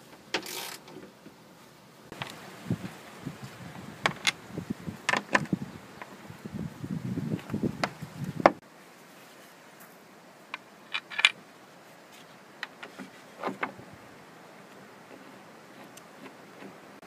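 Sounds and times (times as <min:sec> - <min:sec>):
sharp clicks and knocks: 0:05.0 - 0:06.1.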